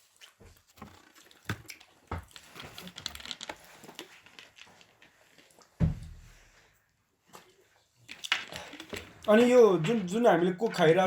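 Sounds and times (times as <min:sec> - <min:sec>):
clicks rustles and crinkles: 0:00.0 - 0:05.8.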